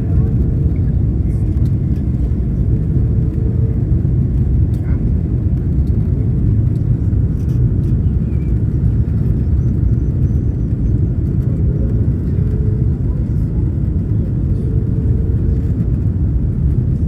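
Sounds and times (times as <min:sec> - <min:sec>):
aircraft cabin engine rumble: 0:00.0 - 0:17.0.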